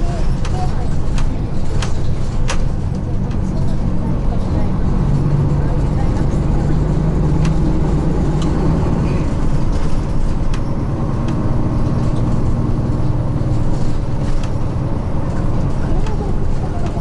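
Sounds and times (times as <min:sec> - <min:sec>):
bus engine drone: 0:00.0 - 0:17.0
clicks and rattles: 0:00.3 - 0:03.8, 0:09.3 - 0:17.0.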